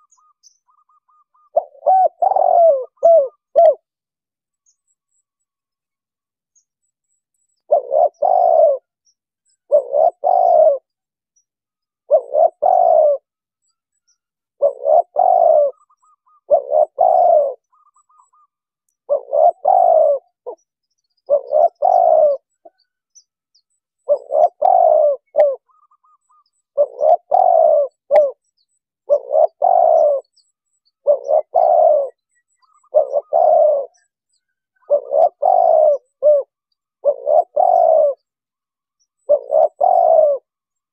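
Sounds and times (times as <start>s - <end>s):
dove cooing: 0.0s - 3.9s, 7.6s - 9.0s, 9.6s - 11.0s, 12.0s - 13.3s, 14.6s - 20.6s, 21.2s - 22.8s, 24.0s - 28.4s, 29.0s - 30.4s, 31.0s - 38.3s, 39.0s - 40.6s.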